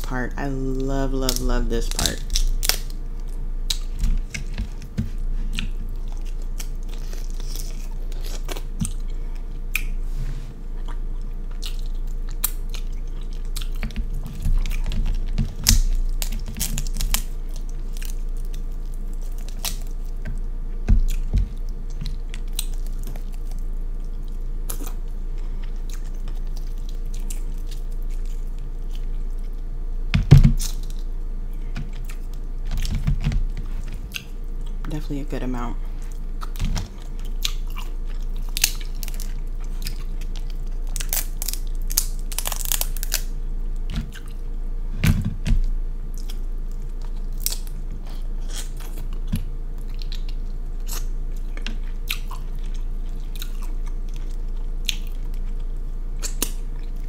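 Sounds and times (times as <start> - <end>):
chewing and lip smacking: 10.7 - 29.7, 30.6 - 32.5, 36.0 - 43.0, 46.1 - 57.0
small clicks and crunches: 11.6 - 25.0, 36.0 - 44.4.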